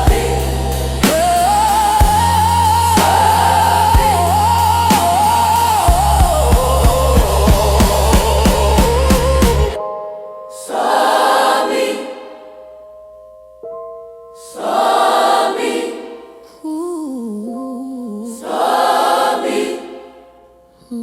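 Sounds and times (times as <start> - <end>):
slow gospel blues music: 0.0 - 9.9.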